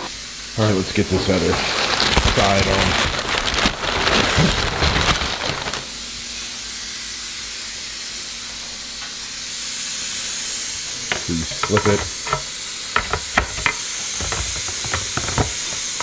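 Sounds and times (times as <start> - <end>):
steady hiss: 0.0 - 3.2
metal parts rubbing and rattling: 10.8 - 16.0.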